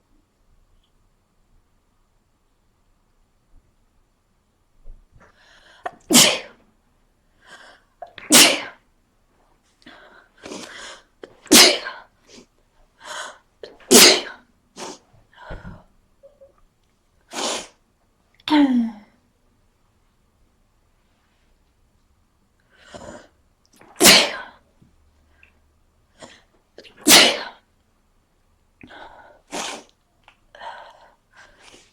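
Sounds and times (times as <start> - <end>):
person sneezing: 5.8 - 6.6, 8.2 - 8.8, 10.4 - 12.4, 13.8 - 15.0, 17.3 - 17.8, 23.8 - 24.6, 26.8 - 27.6, 29.5 - 29.9.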